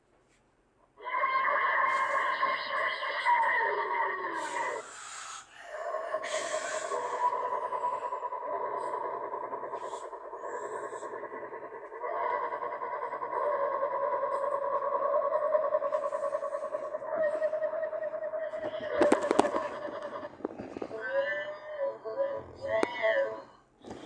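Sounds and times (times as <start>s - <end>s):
voice altered by effects: 1.0s - 5.0s, 5.6s - 23.5s.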